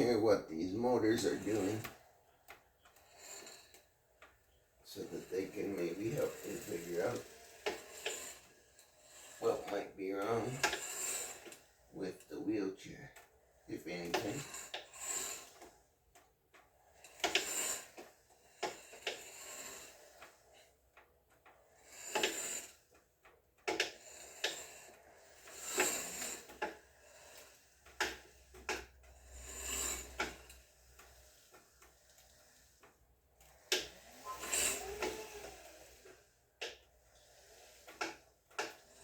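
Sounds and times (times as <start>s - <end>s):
wheelchair motors clicking and grinding: 0.0s - 39.0s
wavering motor whine: 4.9s - 11.5s, 33.8s - 36.1s.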